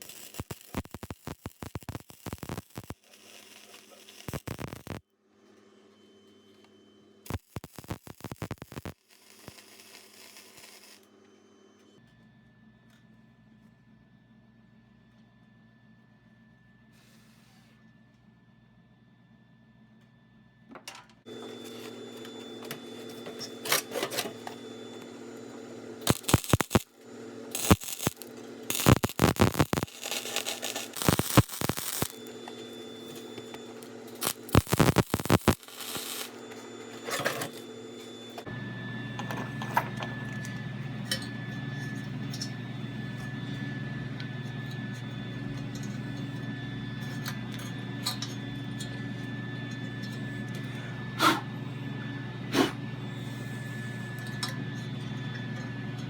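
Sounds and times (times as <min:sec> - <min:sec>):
welding arc crackling: 0:00.0 - 0:05.0, 0:07.3 - 0:11.0, 0:25.0 - 0:38.4
machine hum: 0:21.3 - 0:56.0.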